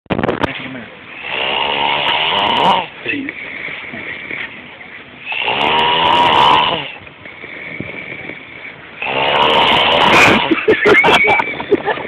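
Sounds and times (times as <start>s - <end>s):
person snoring heavily: 1.1s - 4.6s, 5.2s - 10.6s
quiet breathing: 6.8s - 9.0s.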